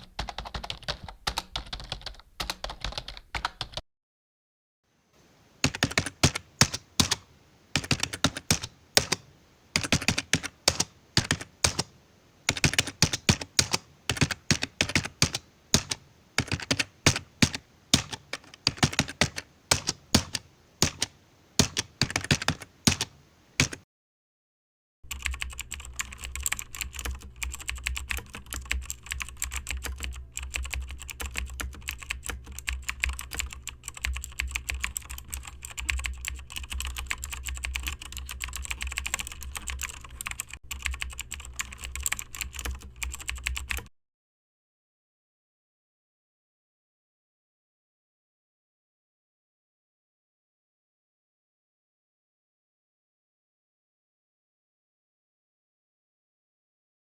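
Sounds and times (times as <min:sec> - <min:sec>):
typing on computer keyboard: 0:00.0 - 0:03.8, 0:05.6 - 0:23.8, 0:25.1 - 0:43.9.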